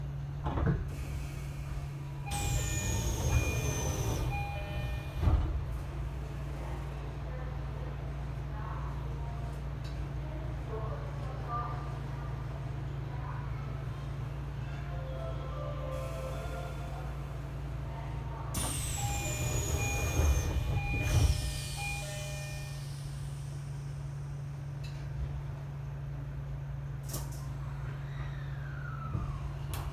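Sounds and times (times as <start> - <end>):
low train hum: 0.0 - 29.9
two-tone door chime: 2.3 - 5.4, 18.9 - 22.8.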